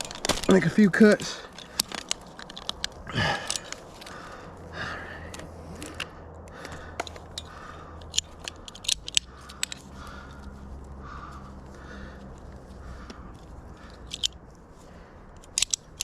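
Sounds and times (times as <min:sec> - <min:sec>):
sharp clicks and scrapes: 0:00.0 - 0:04.2, 0:05.3 - 0:10.5, 0:12.3 - 0:14.5, 0:15.3 - 0:16.0.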